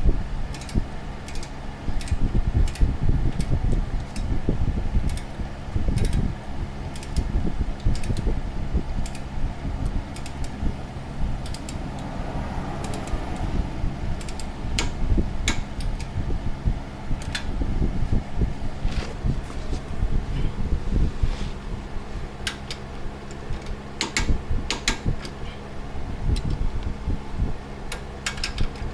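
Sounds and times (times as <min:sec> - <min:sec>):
electric fan running: 0:00.0 - 0:28.9
metallic clicks of hand tools: 0:00.5 - 0:03.5, 0:06.9 - 0:08.3, 0:27.9 - 0:28.8.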